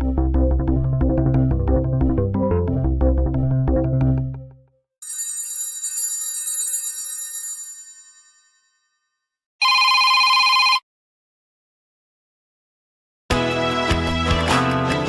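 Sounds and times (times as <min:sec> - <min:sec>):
musical ringtone: 0:09.6 - 0:10.8.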